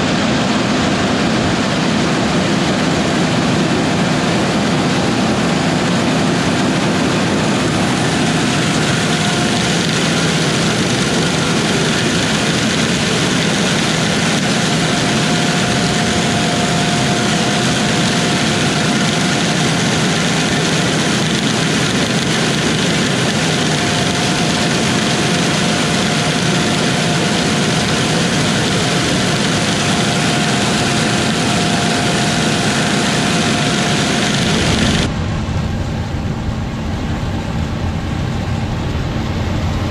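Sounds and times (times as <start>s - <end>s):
faint high whine: 0.0s - 39.9s
farm machinery engine running: 0.0s - 39.9s.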